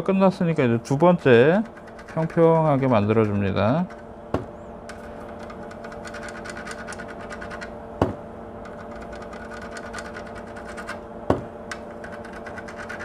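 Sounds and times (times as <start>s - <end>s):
steady low hum: 0.0s - 13.0s
sharp knocks: 4.3s - 5.0s, 8.0s - 8.2s, 11.3s - 11.8s.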